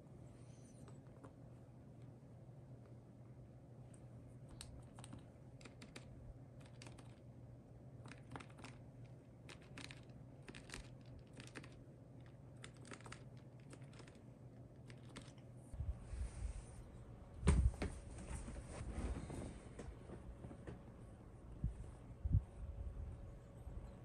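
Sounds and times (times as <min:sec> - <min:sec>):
light plastic keyboard clicks: 0:04.5 - 0:07.2, 0:08.0 - 0:14.2.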